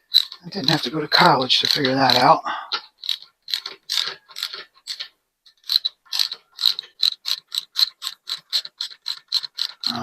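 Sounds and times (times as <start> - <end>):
socket ratchet clicking: 0.0 - 0.9, 1.6 - 10.0.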